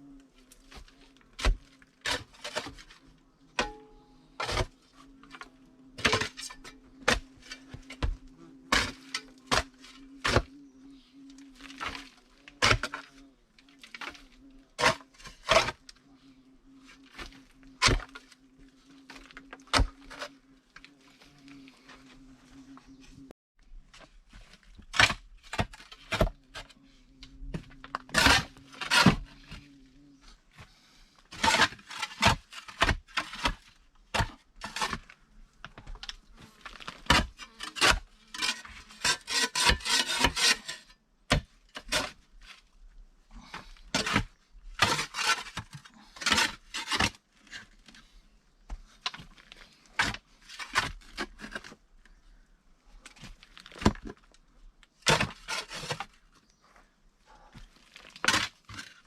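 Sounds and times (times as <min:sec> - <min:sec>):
stones scraping over ground: 0:00.4 - 0:10.5, 0:11.5 - 0:16.0, 0:31.3 - 0:42.8, 0:43.4 - 0:52.2, 0:57.4 - 0:59.0.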